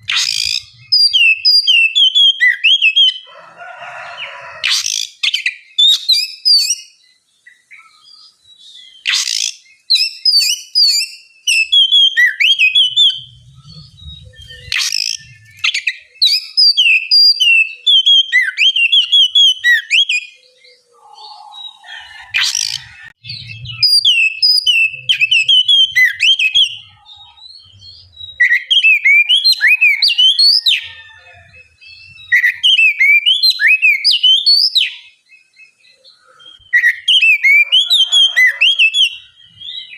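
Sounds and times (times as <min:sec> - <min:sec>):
short harsh bird calls: 0:00.0 - 0:01.9, 0:03.2 - 0:06.8, 0:08.9 - 0:11.6, 0:12.4 - 0:17.8, 0:21.0 - 0:23.2
bird singing whistled notes: 0:00.0 - 0:03.3, 0:04.7 - 0:39.9.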